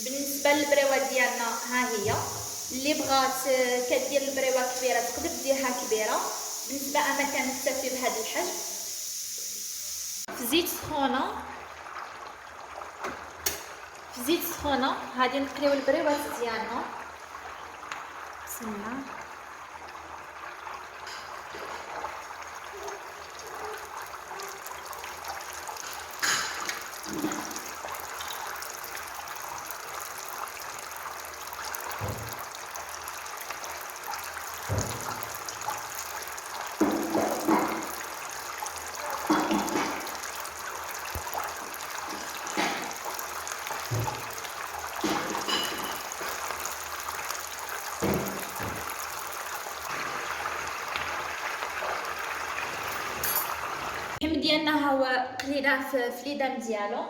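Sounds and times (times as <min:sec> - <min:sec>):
food sizzling in hot oil: 0:00.0 - 0:54.2
knocks and clinks: 0:53.0 - 0:53.7.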